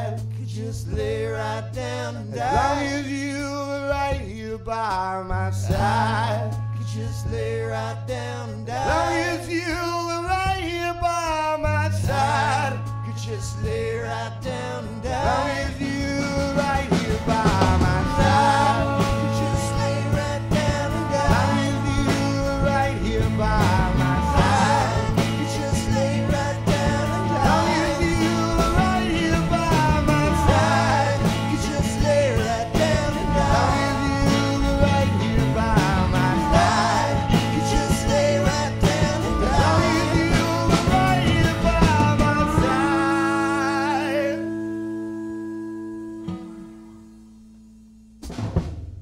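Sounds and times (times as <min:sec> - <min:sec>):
rock band playing: 0:08.7 - 0:47.6
wavering melodic lead: 0:14.4 - 0:47.6.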